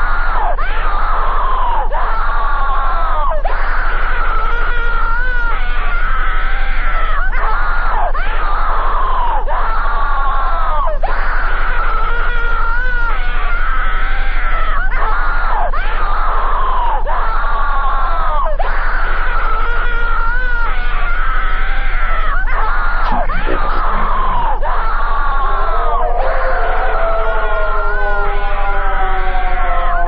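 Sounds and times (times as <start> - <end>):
alert alarm wailing tones: 23.0 - 24.8, 25.4 - 30.0
steady low hum: 23.0 - 30.0.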